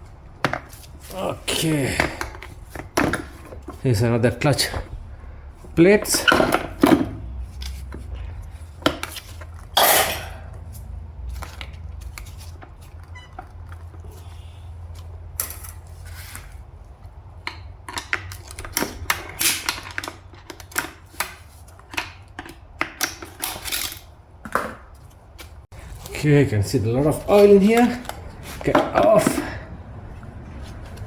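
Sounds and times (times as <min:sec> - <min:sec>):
metal parts clinking and clattering: 0:23.2 - 0:24.1.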